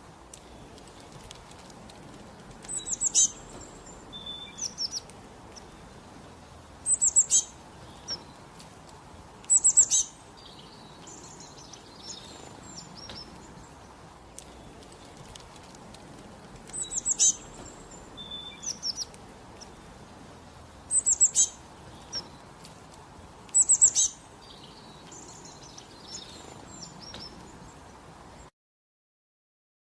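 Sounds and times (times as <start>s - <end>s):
faint hiss: 0.0s - 28.5s
soft high chirps: 20.9s - 22.4s, 23.5s - 24.2s.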